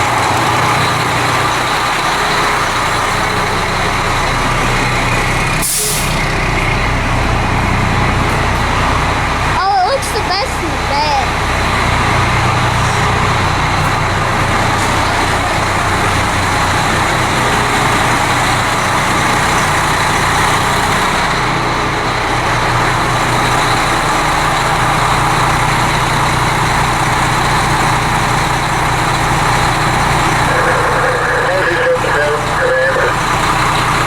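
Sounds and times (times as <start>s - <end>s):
vehicle engine running: 0.0s - 34.0s
broad constant noise: 28.5s - 34.0s.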